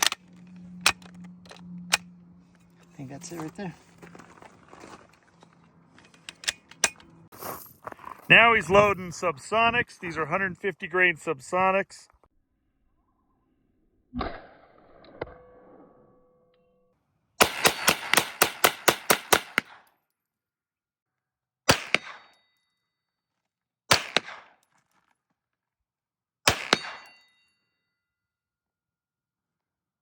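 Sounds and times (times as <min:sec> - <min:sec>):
gunshots: 0:17.4 - 0:19.8, 0:23.9 - 0:24.5, 0:26.5 - 0:27.1.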